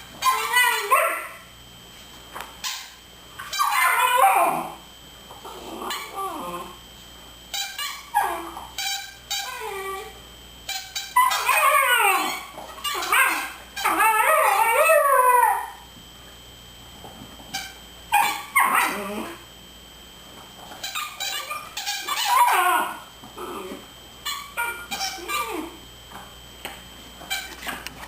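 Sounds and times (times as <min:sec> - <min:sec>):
puppy whining and yipping: 0:03.4 - 0:04.7, 0:07.6 - 0:08.6, 0:09.3 - 0:10.1, 0:11.1 - 0:15.8, 0:18.1 - 0:19.4, 0:20.9 - 0:25.8.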